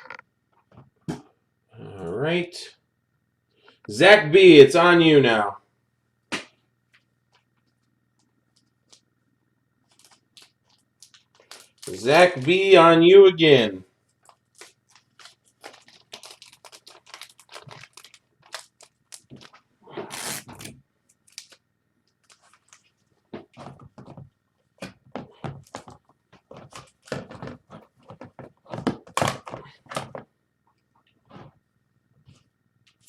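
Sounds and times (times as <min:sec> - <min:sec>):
cards rustling: 0:09.8 - 0:12.8, 0:14.0 - 0:24.2.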